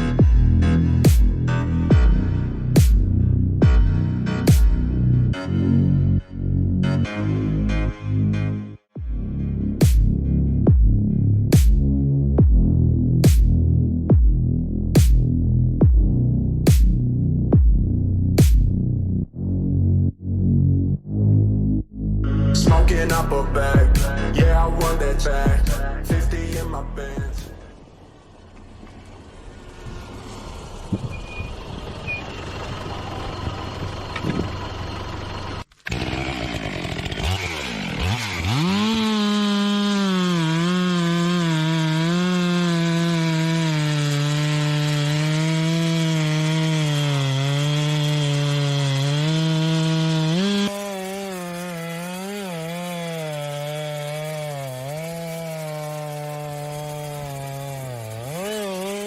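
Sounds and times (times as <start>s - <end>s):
chainsaw cutting through tree: 0.0s - 5.4s, 12.6s - 13.6s, 14.9s - 15.3s, 22.6s - 27.8s, 35.6s - 59.0s.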